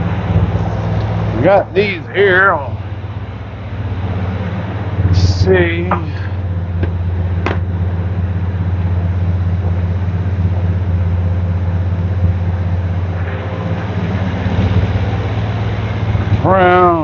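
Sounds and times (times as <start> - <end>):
pickup engine idling: 0.0 - 17.0.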